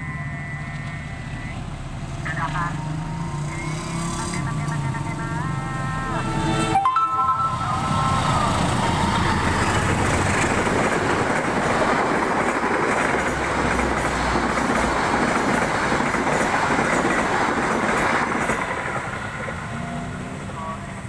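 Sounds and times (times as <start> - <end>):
train rumbling past: 0.1 - 21.0
train horn: 5.6 - 9.7.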